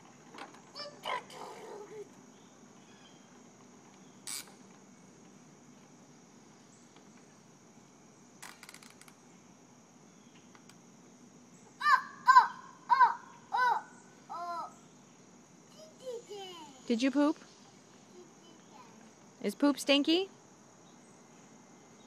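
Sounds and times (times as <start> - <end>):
high-pitched insect drone: 4.0 - 4.6.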